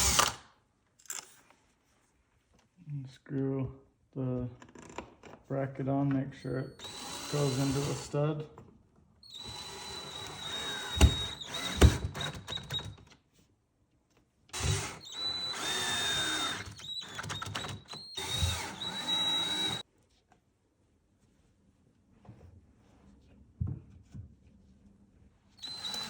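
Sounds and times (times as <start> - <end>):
cordless drill driving screws: 0.0 - 0.4, 6.4 - 8.2, 9.2 - 13.0, 14.6 - 19.8, 25.6 - 26.0.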